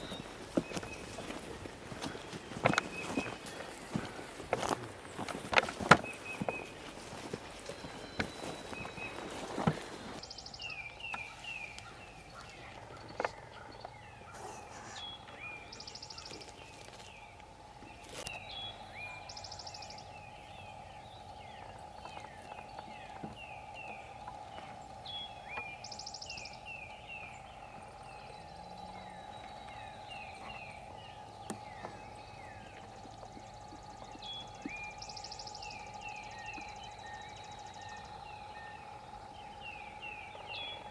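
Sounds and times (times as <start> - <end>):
faint steady hum: 0.0 - 40.9
songbirds singing: 0.0 - 40.9.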